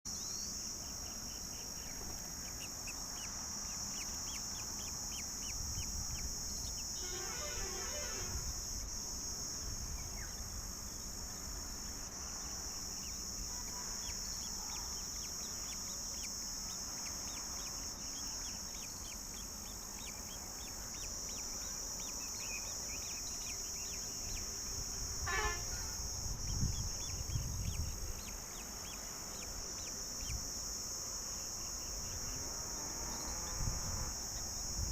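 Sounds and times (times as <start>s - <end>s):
high-pitched insect drone: 0.1s - 34.9s.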